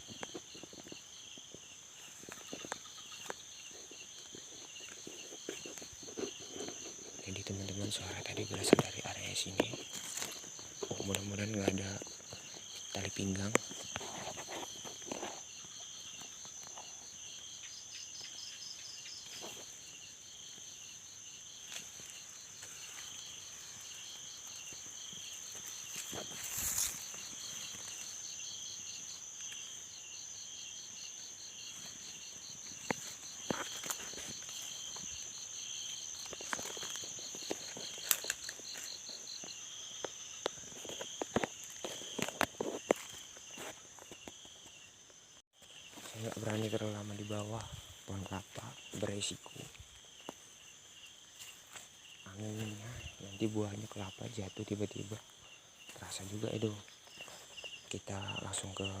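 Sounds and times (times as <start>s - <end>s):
footsteps: 0.0s - 16.9s, 21.7s - 28.3s, 31.6s - 44.8s
crickets chirping: 0.0s - 59.0s
high-pitched insect trill: 0.0s - 59.0s.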